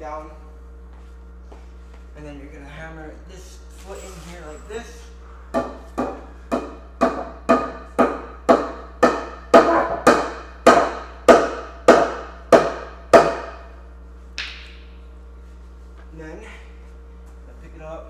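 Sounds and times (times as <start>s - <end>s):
mallet hammering wood: 5.6s - 13.6s.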